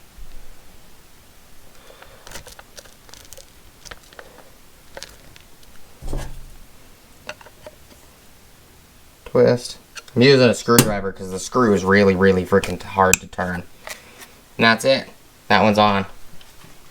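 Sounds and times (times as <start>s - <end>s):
dull bump: 6.0s - 6.7s.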